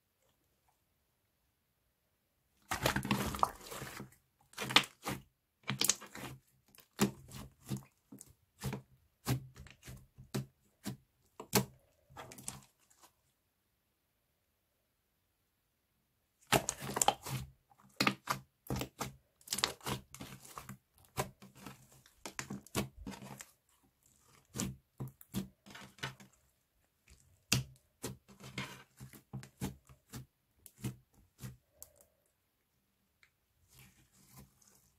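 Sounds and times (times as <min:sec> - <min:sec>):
slime clicking and crackling: 0:16.5 - 0:17.3.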